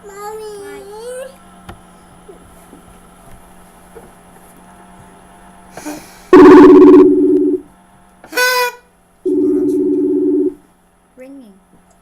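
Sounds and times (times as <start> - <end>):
brief high-pitched sound: 6.4 - 7.6
two-note ringing tone: 6.4 - 7.6, 9.3 - 10.6.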